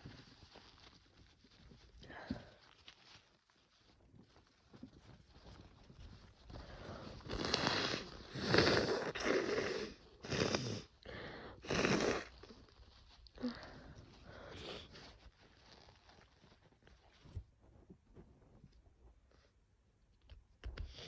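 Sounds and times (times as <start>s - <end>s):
person blowing nose: 6.8s - 12.6s
person sniffing: 13.4s - 15.1s.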